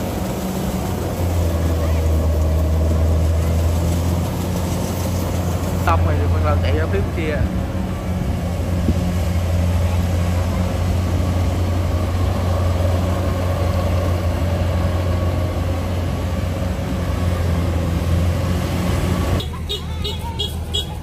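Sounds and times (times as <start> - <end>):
combine harvester engine droning: 0.0 - 21.0.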